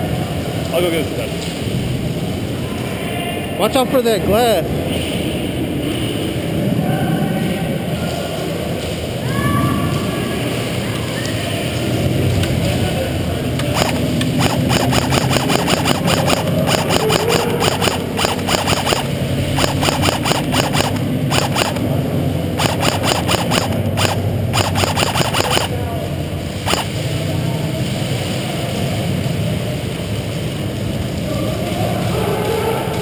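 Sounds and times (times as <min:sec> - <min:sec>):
steady low hum: 0:13.3 - 0:27.1
airsoft gun rapid fire: 0:13.6 - 0:21.9, 0:22.6 - 0:25.8, 0:26.7 - 0:26.9
single airsoft shot: 0:13.7 - 0:21.8, 0:22.6 - 0:25.8, 0:26.7 - 0:26.9.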